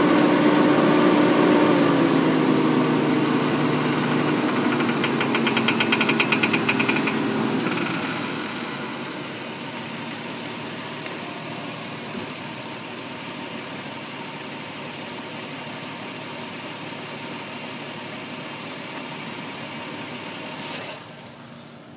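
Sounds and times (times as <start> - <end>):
car engine idling: 2.0 - 20.6.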